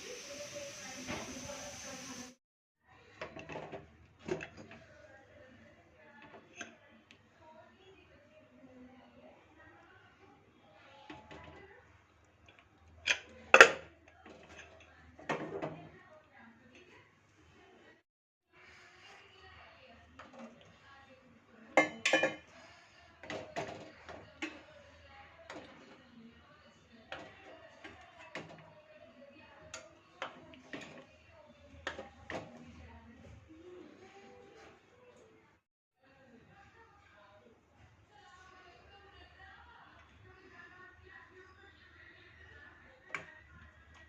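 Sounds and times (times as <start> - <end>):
kitchen utensils clinking: 13.0 - 15.7, 21.8 - 22.5
metal utensil clinking dishes: 21.8 - 22.5.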